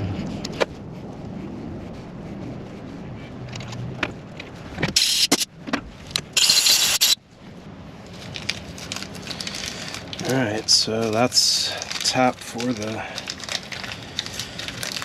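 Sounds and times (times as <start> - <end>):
air hissing blasts: 5.0 - 5.5, 6.4 - 7.2.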